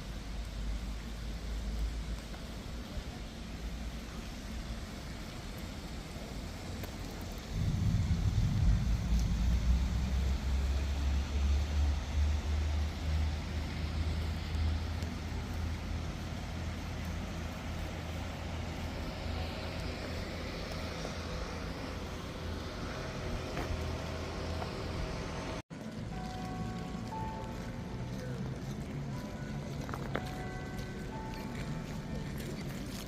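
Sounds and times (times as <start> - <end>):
low engine rumble of passing vehicle: 0.0 - 33.0
tyres hissing on wet road: 0.0 - 33.0.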